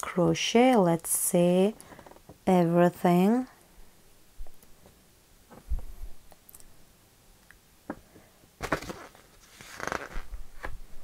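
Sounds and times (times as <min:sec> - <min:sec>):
page turning rustle: 0:08.6 - 0:10.8.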